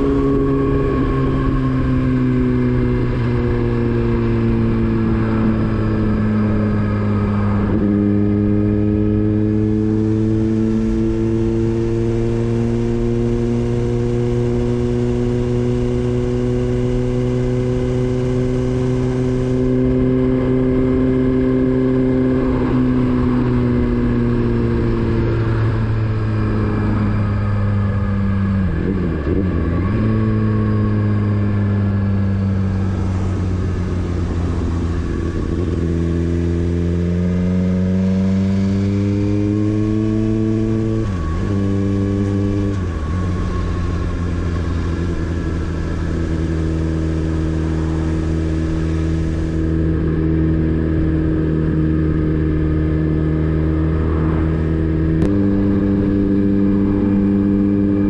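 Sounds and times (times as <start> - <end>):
motorcycle engine running: 0.0 - 58.0.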